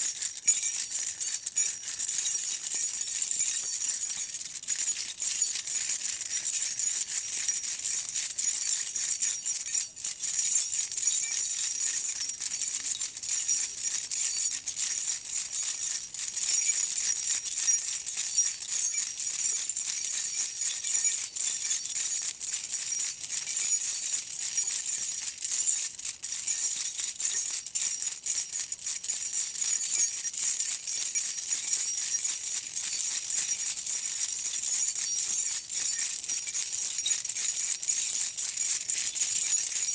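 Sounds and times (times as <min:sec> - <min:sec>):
keys jangling: 0:00.0 - 0:07.6.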